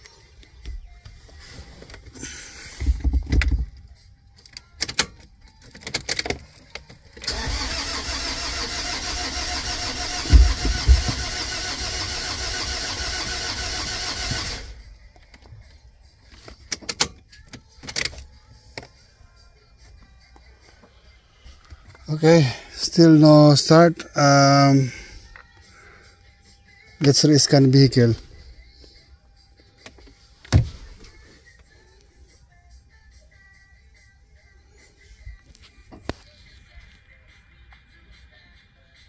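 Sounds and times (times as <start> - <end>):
starter motor cranking engine: 7.2 - 14.8.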